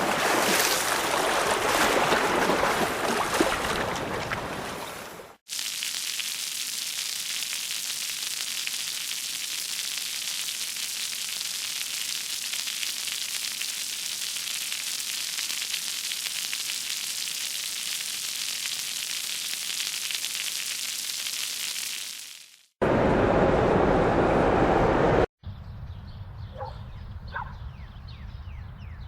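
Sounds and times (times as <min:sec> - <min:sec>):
fire crackling: 0:05.5 - 0:22.8.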